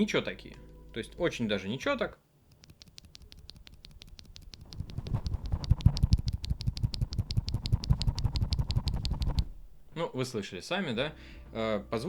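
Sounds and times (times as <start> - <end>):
rapid typing on mechanical keyboard: 2.6 - 9.5.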